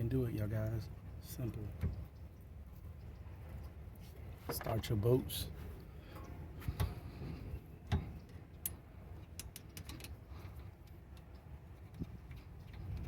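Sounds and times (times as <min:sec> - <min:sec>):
tools clicking and knocking: 0:07.9 - 0:10.2.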